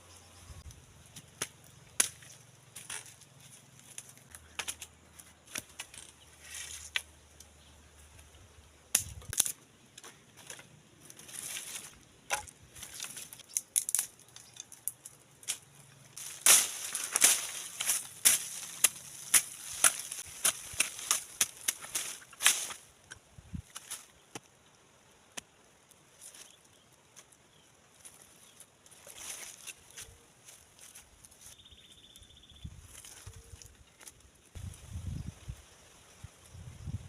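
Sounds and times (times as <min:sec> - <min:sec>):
sticks and leaves rustling: 0:00.2 - 0:37.0
sticks snapping: 0:01.1 - 0:03.2, 0:03.8 - 0:07.6, 0:08.9 - 0:24.5, 0:25.2 - 0:26.5.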